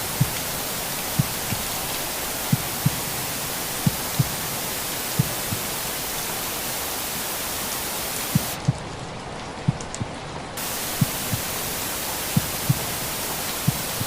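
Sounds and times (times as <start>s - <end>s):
white noise hiss: 0.0s - 14.0s
heartbeat thumps: 0.1s - 0.5s, 1.1s - 1.7s, 2.4s - 3.1s, 3.8s - 4.5s, 5.2s - 5.7s, 8.3s - 8.9s, 9.6s - 11.6s, 12.3s - 13.0s, 13.6s - 14.0s.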